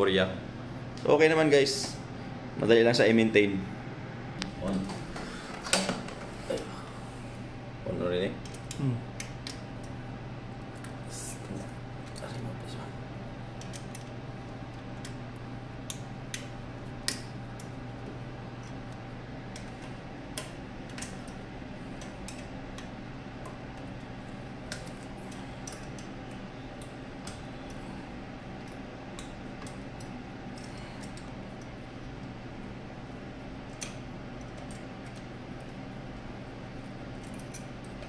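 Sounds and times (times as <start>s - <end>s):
low electrical hum: 0.0s - 38.0s.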